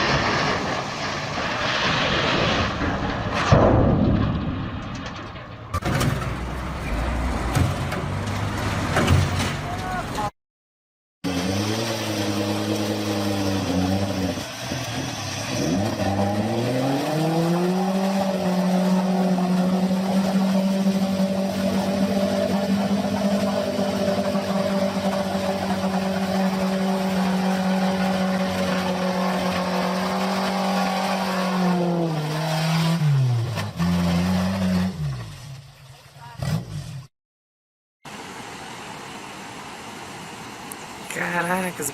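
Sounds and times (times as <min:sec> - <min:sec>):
engine running at high revs: 0:11.2 - 0:35.3.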